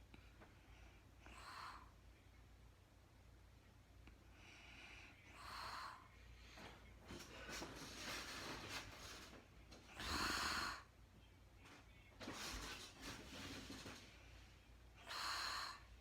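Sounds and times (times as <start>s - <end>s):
woman breathing softly: 0.0s - 2.0s, 4.1s - 7.6s, 14.4s - 16.0s.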